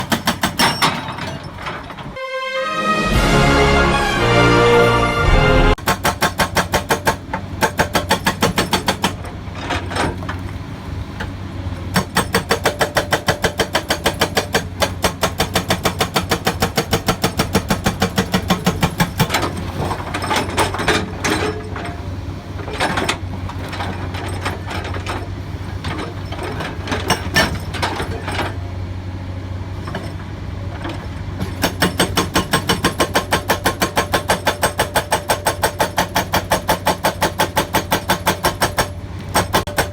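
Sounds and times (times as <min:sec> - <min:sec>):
hydraulic hammer pounding rock: 0:00.0 - 0:02.1, 0:05.8 - 0:10.2, 0:11.9 - 0:22.0, 0:22.6 - 0:28.5, 0:31.0 - 0:39.9
excavator engine hum: 0:03.1 - 0:39.9.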